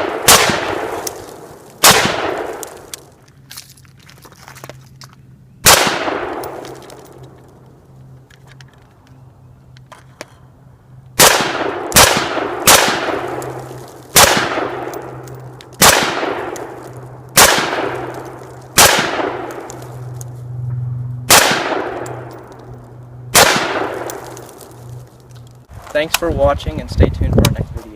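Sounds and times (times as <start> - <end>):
gunshots with echoing tail: 0.0 - 1.0, 1.8 - 2.6, 5.6 - 6.6, 11.2 - 15.2, 15.8 - 16.8, 17.4 - 19.7, 21.3 - 22.3, 23.3 - 24.3.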